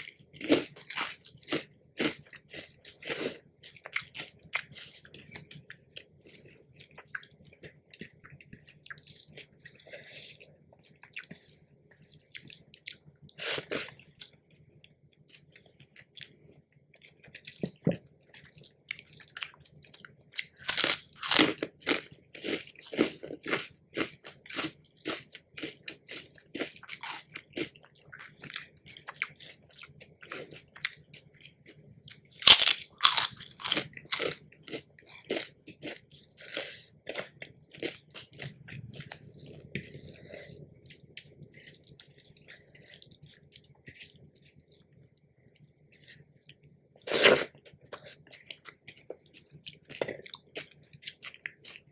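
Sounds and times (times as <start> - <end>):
person chewing quietly: 0.0 - 51.9
loud crunching bites: 20.6 - 21.6, 32.4 - 34.4.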